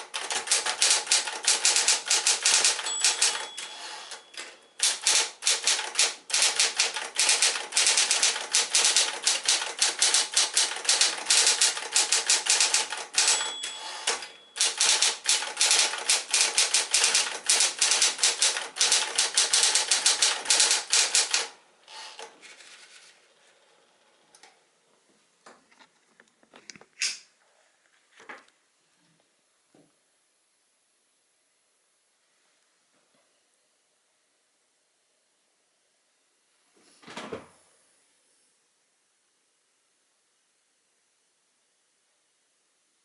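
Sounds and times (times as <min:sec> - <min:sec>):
electric typewriter typing: 0:00.0 - 0:22.3
typewriter bell ding: 0:00.3 - 0:21.4.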